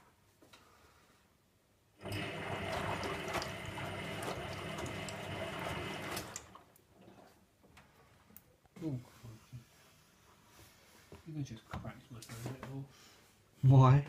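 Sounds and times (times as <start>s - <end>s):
washing machine motor hum: 2.0s - 7.4s.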